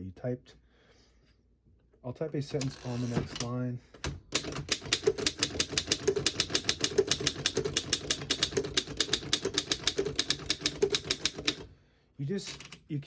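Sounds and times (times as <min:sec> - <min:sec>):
manual typewriter keystrokes: 0:02.6 - 0:11.7.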